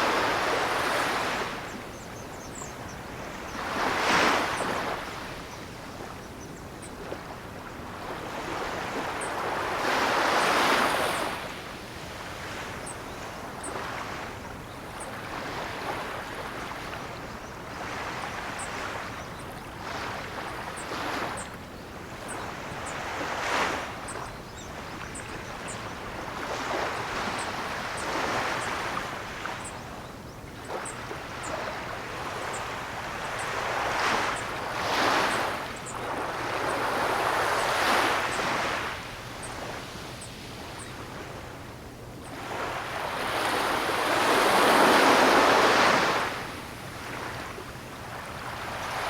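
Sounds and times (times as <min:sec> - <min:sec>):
ocean waves breaking: 0:30.6 - 0:41.7, 0:42.3 - 0:49.0.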